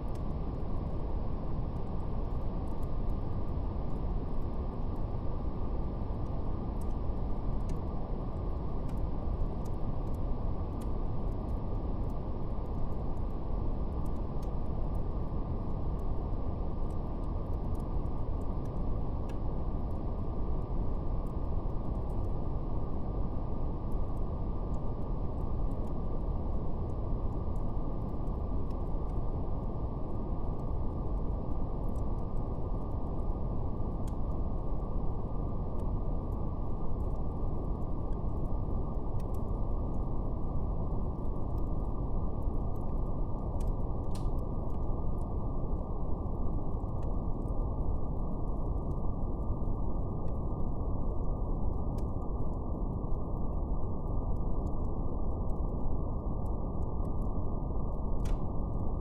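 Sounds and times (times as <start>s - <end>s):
wood fire crackling: 0.0s - 57.3s, 58.0s - 59.0s.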